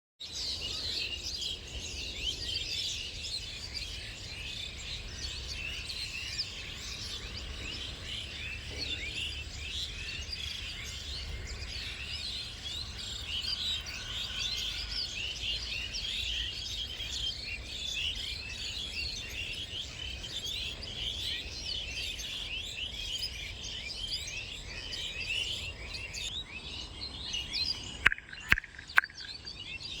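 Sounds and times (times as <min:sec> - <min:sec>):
flock of birds chattering: 0:00.4 - 0:30.0
sharp clicks: 0:28.0 - 0:29.5.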